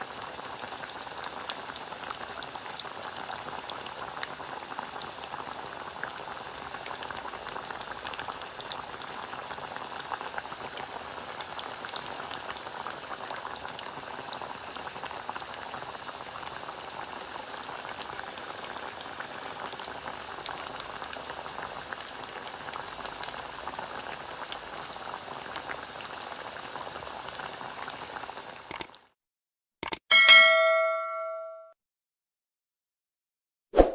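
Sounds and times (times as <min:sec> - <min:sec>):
hot oil sizzling and crackling: 0:00.0 - 0:29.1
bell-like chime: 0:30.1 - 0:31.7.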